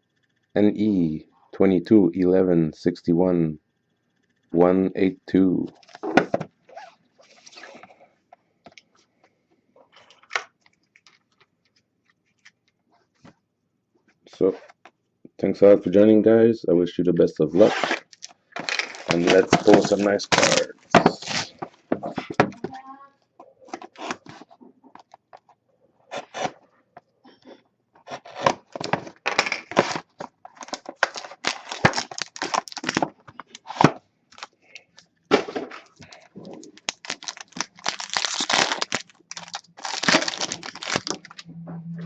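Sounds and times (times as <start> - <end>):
plastic wrap tearing and crinkling: 17.6 - 21.6, 28.0 - 34.6, 35.8 - 41.4
cardboard and cards crackling: 17.6 - 22.7, 28.0 - 41.4.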